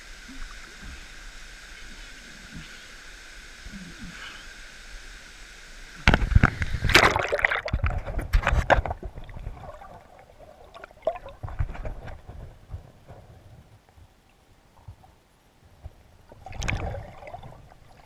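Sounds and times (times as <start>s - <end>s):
falling water rushing: 0.0s - 12.1s
water splashing and sloshing: 5.7s - 18.0s.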